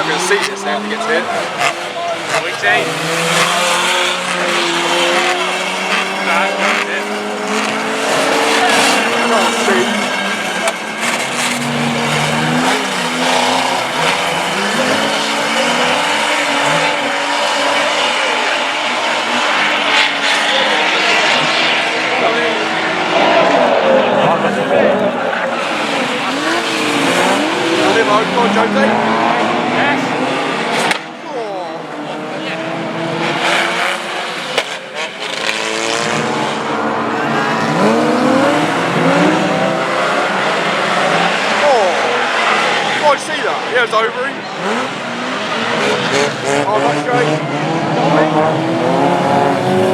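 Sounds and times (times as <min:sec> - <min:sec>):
racing car engines revving: 0:00.0 - 0:49.9
track noise: 0:00.0 - 0:49.9.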